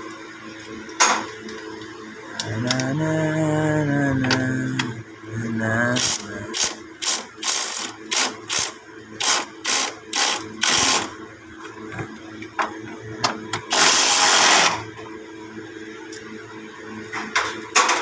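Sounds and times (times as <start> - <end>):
ratchet wrench clicking: 6.0 - 11.1, 13.7 - 14.7.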